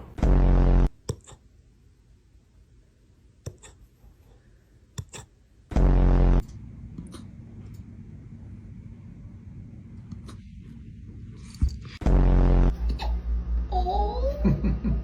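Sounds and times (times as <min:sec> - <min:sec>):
loud pitched sound: 0:00.0 - 0:00.9, 0:05.7 - 0:06.5, 0:12.0 - 0:13.1
steady low background sound: 0:00.0 - 0:15.0.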